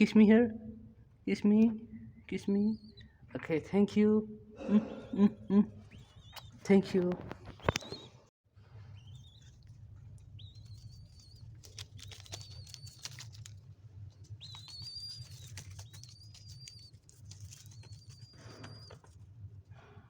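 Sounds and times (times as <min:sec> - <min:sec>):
baby dove squeaking calls: 0:10.4 - 0:13.5, 0:14.4 - 0:19.1.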